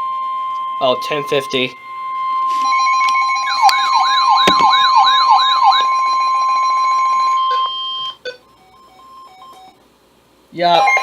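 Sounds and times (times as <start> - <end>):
siren-like wail: 0.0 - 8.1
steady alarm tone: 0.0 - 9.8, 10.7 - 11.0.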